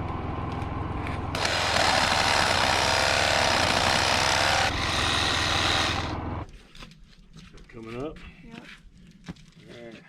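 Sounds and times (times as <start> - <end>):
power tool running: 1.3 - 6.3.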